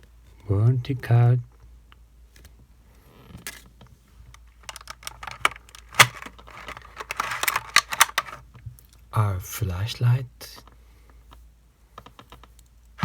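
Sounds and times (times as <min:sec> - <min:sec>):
packaging rustling and crinkling: 0:04.4 - 0:08.4.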